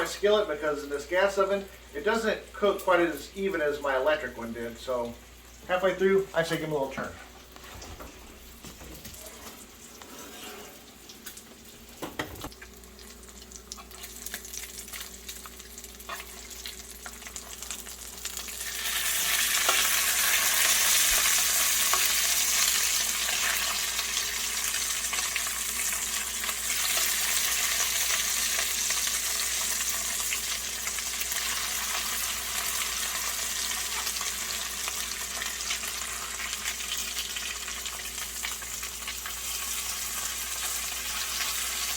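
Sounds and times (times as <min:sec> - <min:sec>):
bacon sizzling with pops: 0:10.8 - 0:41.9.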